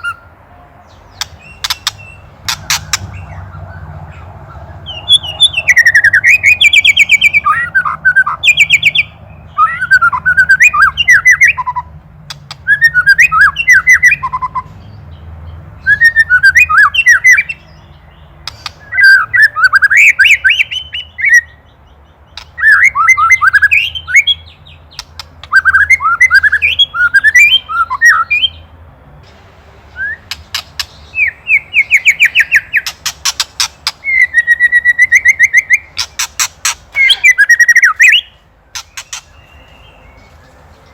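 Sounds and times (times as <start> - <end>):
bird whistling and rattling clicks: 1.2 - 3.0, 38.8 - 39.3.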